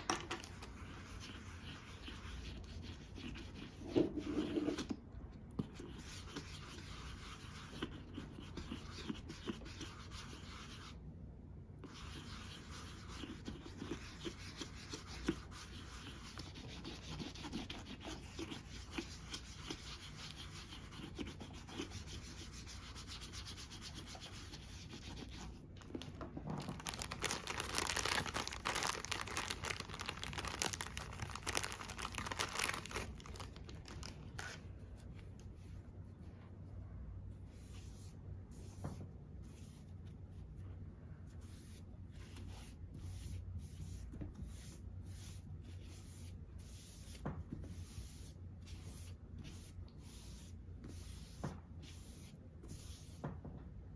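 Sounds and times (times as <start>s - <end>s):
makeup brush rubbing and scratching: 0.0s - 5.0s, 5.6s - 11.1s, 11.8s - 25.7s, 41.3s - 53.2s.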